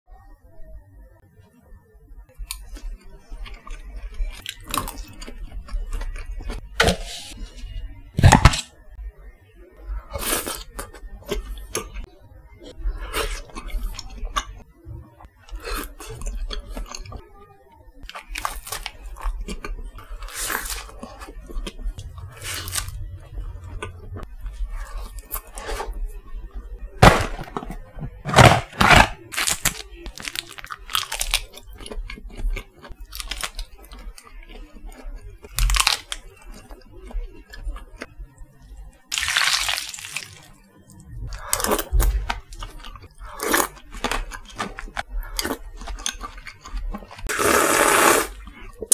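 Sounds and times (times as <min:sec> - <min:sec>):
chewing: 0:10.2 - 0:14.6, 0:15.3 - 0:17.2, 0:18.0 - 0:26.0, 0:29.4 - 0:47.3
crunching crisp food: 0:18.0 - 0:26.2, 0:27.0 - 0:38.1, 0:39.1 - 0:40.6, 0:41.3 - 0:48.9.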